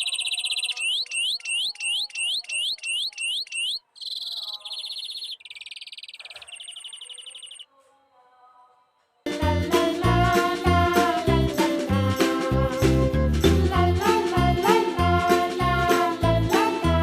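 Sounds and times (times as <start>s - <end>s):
greenfinch singing: 0.0s - 7.7s.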